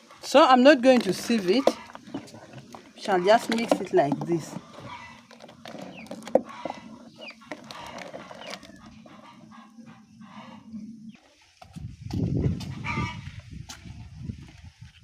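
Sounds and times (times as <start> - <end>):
chickens clucking: 0.0 - 11.4.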